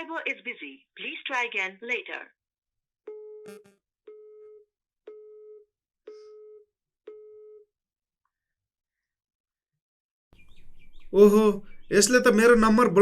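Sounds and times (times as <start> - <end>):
phone busy tone beeps: 3.1 - 7.7.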